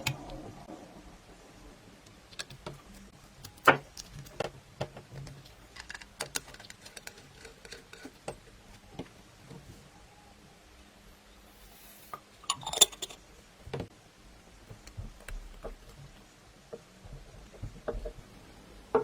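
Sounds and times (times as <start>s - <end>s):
hard objects clicking and knocking: 12.5s - 13.2s.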